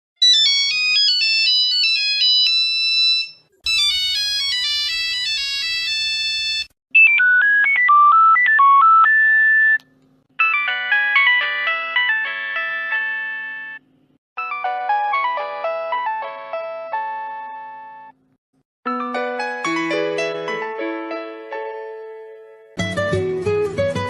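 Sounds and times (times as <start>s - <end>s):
mobile phone ringtones: 0.2s - 9.8s, 10.4s - 13.8s.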